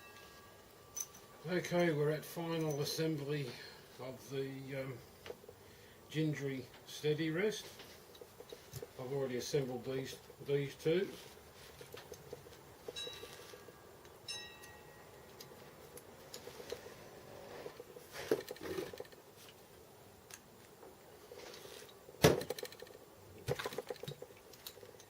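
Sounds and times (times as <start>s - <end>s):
metal parts clinking: 0.9s - 3.0s.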